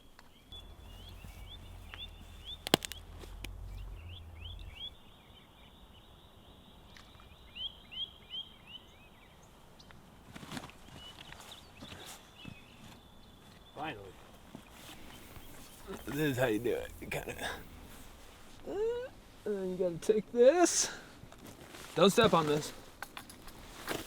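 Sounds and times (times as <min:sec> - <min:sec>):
birds chirping: 0:00.1 - 0:09.9, 0:10.9 - 0:19.9
low rumble: 0:00.5 - 0:07.6, 0:15.0 - 0:19.5.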